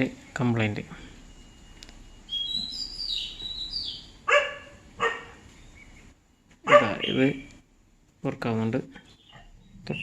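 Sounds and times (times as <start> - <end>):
bird chirping: 1.0 - 7.8, 8.9 - 10.0
dog barking: 4.2 - 5.4, 6.6 - 7.1.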